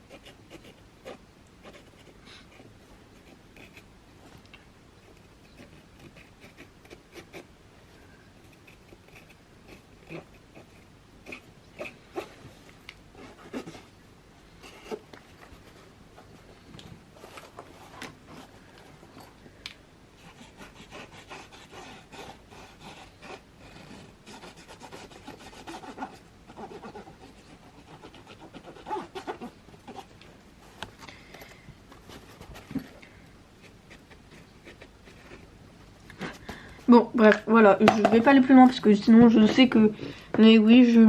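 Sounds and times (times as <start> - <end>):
marker tip scratching on fabric: 5.0 - 7.5, 8.4 - 12.3, 20.2 - 30.1.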